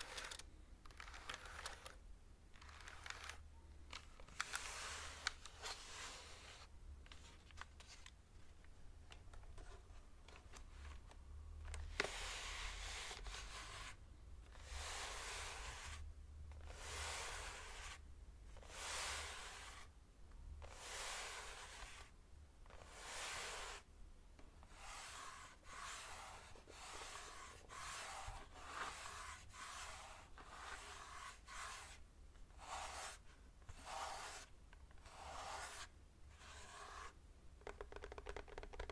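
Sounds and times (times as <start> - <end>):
hands rubbing and brushing: 24.6 - 32.0, 32.6 - 37.2.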